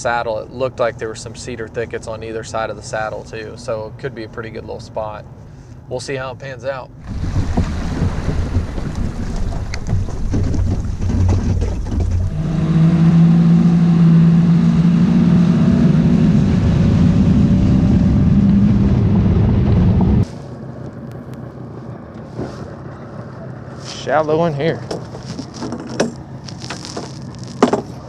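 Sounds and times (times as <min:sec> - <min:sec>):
boat motor running: 0:00.0 - 0:28.0.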